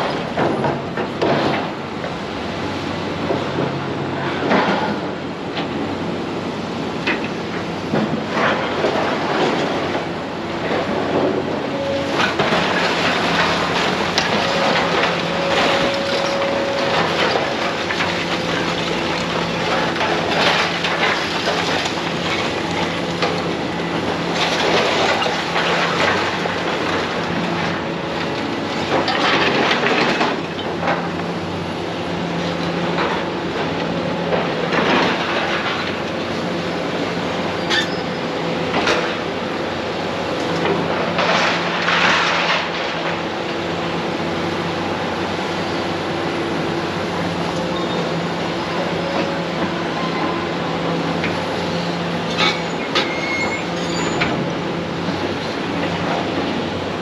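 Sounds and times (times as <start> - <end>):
demolition machinery running: 0.0 - 57.0
debris crunching and crashing: 11.9 - 27.8, 40.9 - 43.2.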